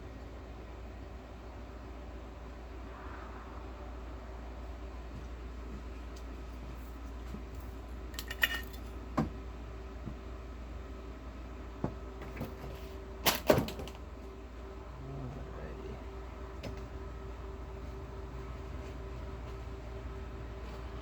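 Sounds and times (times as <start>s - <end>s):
steady low hum: 0.0s - 21.0s
metal tools clinking: 8.1s - 8.9s.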